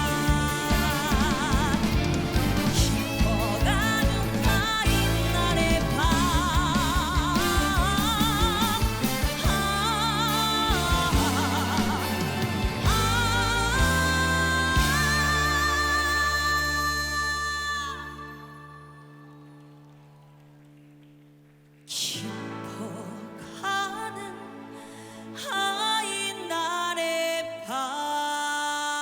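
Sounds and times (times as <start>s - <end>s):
band playing: 0.0s - 18.0s
woman singing with vibrato: 0.0s - 19.6s, 21.9s - 29.0s.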